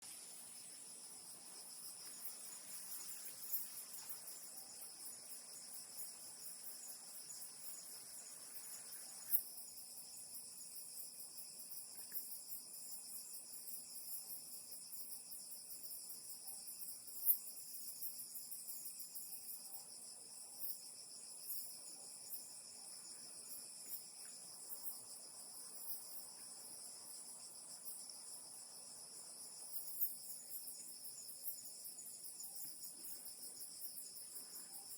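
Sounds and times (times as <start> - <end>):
low hiss: 0.0 - 9.4
night insects chorus: 0.0 - 34.9.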